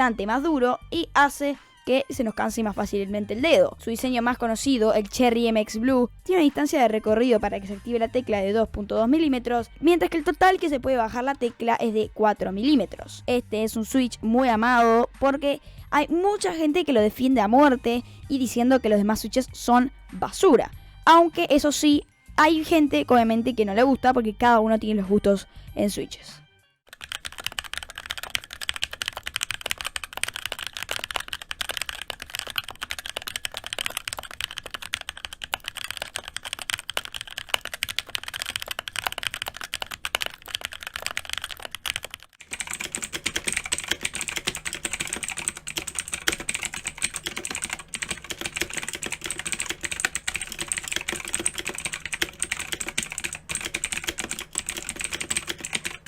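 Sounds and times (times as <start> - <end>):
mechanical keyboard typing: 26.9 - 56.0.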